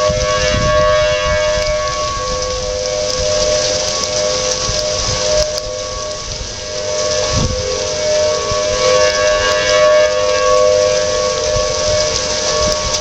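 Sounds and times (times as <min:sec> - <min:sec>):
outdoor warning sirens two-tone: 0:00.0 - 0:13.0
steady rain hiss: 0:00.0 - 0:13.0.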